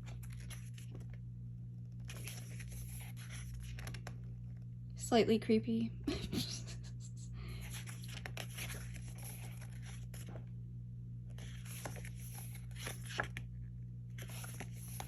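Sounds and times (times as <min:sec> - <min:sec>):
paper pages rustling: 0:00.0 - 0:01.2, 0:01.9 - 0:04.6, 0:07.6 - 0:10.5, 0:11.3 - 0:15.0.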